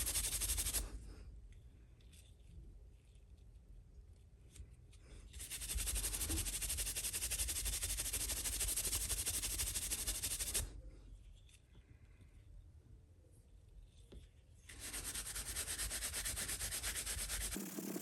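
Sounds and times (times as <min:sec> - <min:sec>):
brush scrubbing leather: 0:14.8 - 0:18.0.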